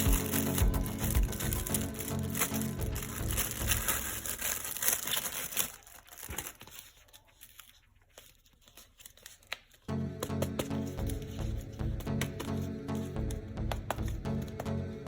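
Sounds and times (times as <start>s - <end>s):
plastic packaging crinkling and tearing: 0.0s - 9.9s.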